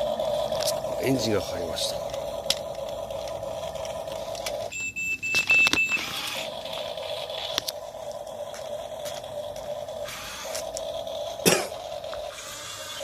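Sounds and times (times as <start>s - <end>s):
simulated engine hum from speaker: 0.0s - 4.7s
high electronic beeps: 4.7s - 6.4s.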